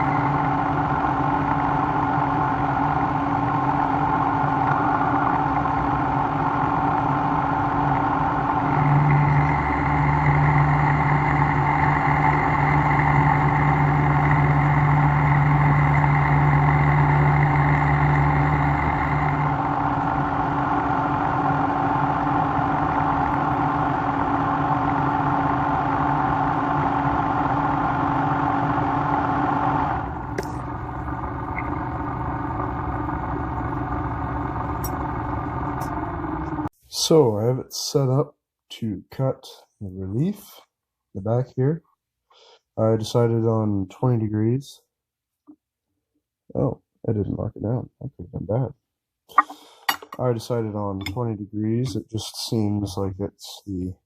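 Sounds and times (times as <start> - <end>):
milling machine humming: 0.0 - 36.7
deep hum with high whine: 0.0 - 38.2, 49.3 - 54.0.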